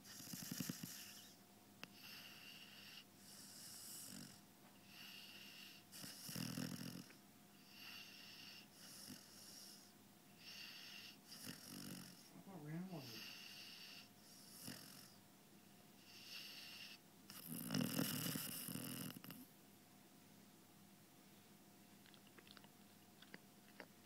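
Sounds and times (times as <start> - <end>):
puppy snoring: 0.0 - 15.2, 16.0 - 19.5.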